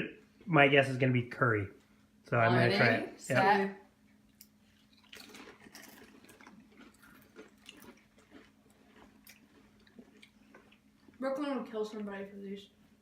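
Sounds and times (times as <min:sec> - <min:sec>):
people chewing potato chips: 0:04.3 - 0:11.2.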